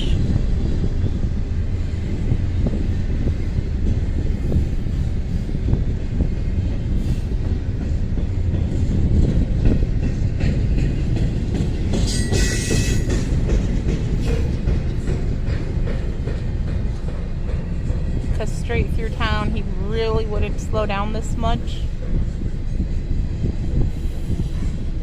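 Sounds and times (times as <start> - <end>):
train cars rumbling and clattering: 0.0 - 25.0
metallic wheel squeal: 12.1 - 13.1.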